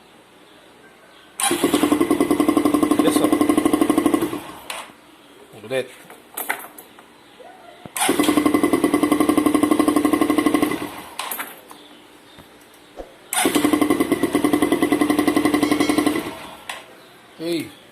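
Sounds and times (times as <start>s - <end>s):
motorcycle starter motor cranking: 1.4s - 4.9s, 8.0s - 11.6s, 13.3s - 16.9s.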